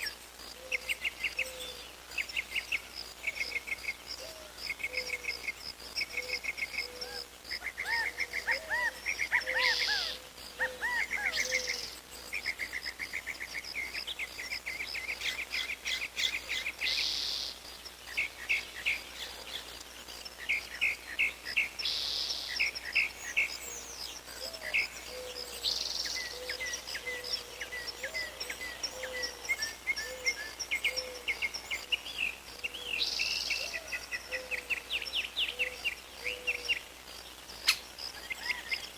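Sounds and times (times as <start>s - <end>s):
lower repeated bird call: 0.0s - 17.6s
birds chirping and trilling: 0.0s - 38.9s.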